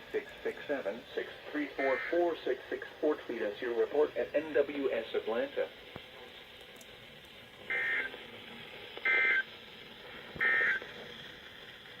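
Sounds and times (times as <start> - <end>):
faint radio hiss: 0.0 - 12.0
shrill two-tone data bursts: 1.8 - 2.4, 7.7 - 8.1, 9.0 - 9.4, 10.4 - 10.8.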